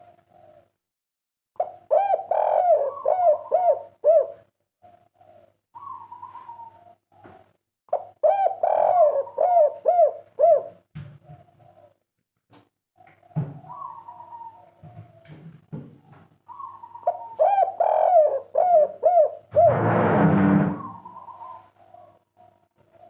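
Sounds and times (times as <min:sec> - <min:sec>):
dove cooing: 0:00.0 - 0:00.8, 0:01.6 - 0:12.0, 0:13.0 - 0:19.8, 0:20.7 - 0:23.0.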